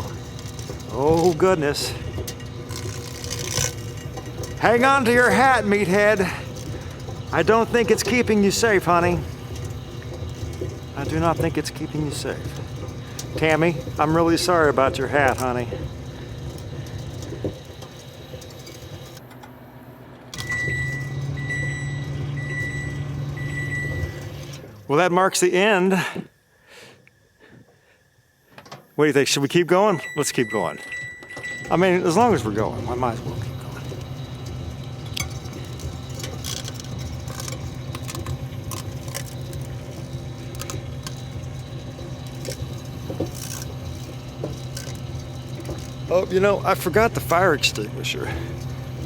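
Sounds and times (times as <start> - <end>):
microwave oven humming: 0.0 - 49.0
long high beeps: 20.4 - 24.5, 29.7 - 33.4.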